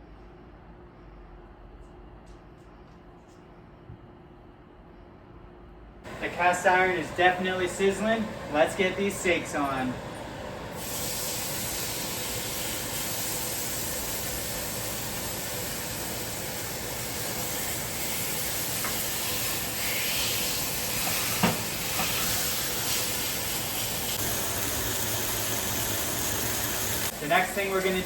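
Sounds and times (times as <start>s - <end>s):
steaks sizzling in skillet: 10.8s - 28.0s.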